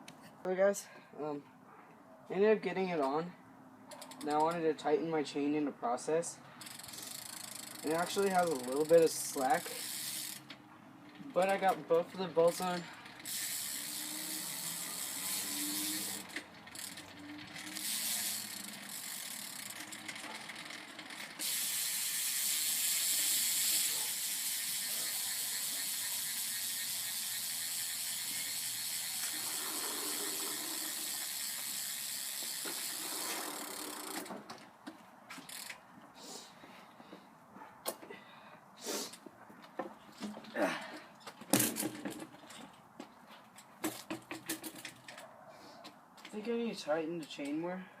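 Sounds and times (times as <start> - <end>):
metallic ratcheting clicks: 6.6 - 34.3, 35.5 - 35.8.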